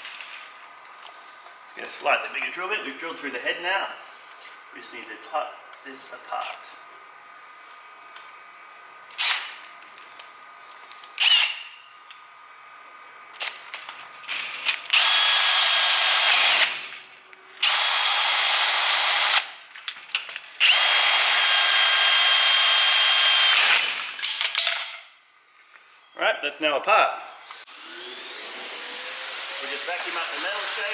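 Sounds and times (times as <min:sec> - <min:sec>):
power tool cutting metal: 0:14.9 - 0:16.9, 0:17.6 - 0:19.5, 0:20.6 - 0:24.2, 0:27.5 - 0:30.9.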